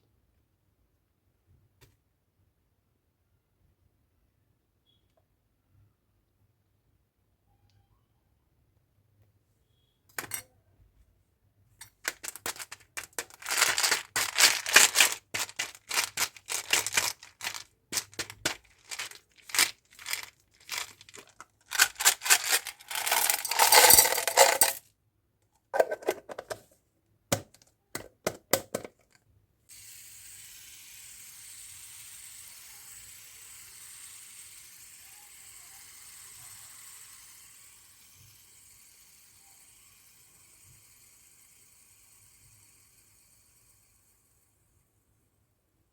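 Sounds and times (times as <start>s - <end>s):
sweet packaging clicks and crackles: 11.8s - 24.8s.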